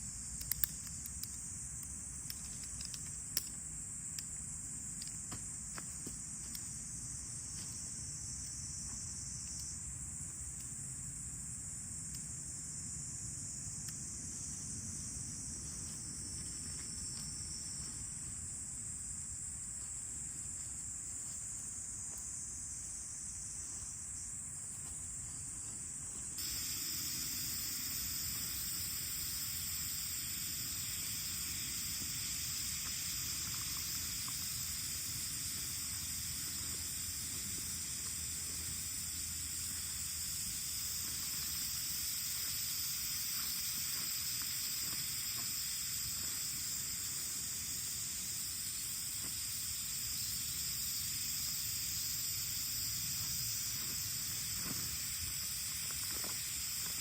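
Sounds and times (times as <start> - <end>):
steady high-pitched hiss: 0.0 - 57.0
faint ticks: 0.3 - 6.8, 8.8 - 10.8, 25.6 - 46.4.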